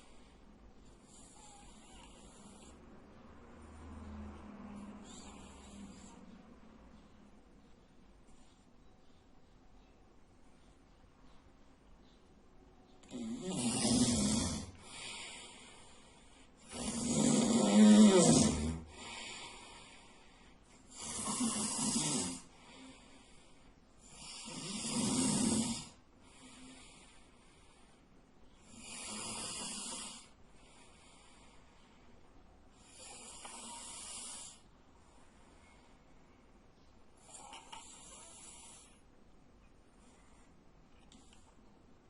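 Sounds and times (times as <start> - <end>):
soft breathing: 0.0 - 12.9, 14.0 - 21.4, 22.4 - 24.2, 25.9 - 28.8, 30.2 - 41.7
man snoring loudly: 13.1 - 15.2, 16.6 - 19.2, 20.9 - 22.5, 24.0 - 26.0, 28.6 - 30.3, 32.8 - 34.6.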